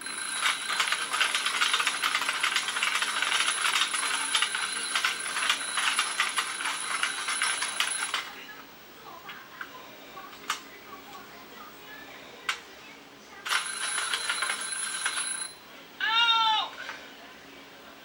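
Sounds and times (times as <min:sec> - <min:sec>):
alarm clock ringing: 0:00.0 - 0:08.3, 0:13.5 - 0:15.6.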